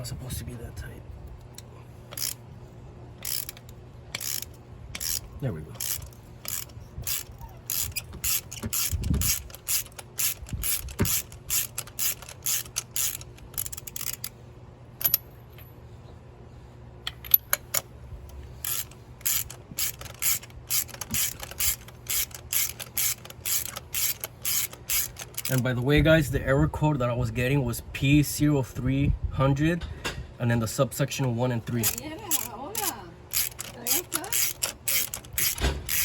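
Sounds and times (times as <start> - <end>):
ratchet wrench clicking: 2.1 - 2.4, 3.2 - 14.3, 18.6 - 25.7, 31.7 - 36.0.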